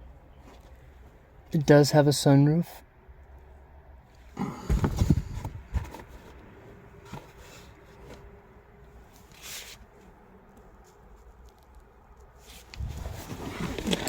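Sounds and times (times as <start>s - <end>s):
rustling: 4.6s - 8.4s, 9.0s - 14.0s.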